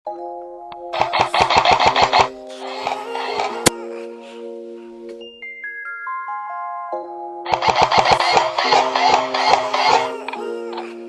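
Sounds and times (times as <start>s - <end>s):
sustained synth music: 0.1s - 5.5s, 6.3s - 11.0s
rapid run of sharp hits: 7.5s - 9.9s.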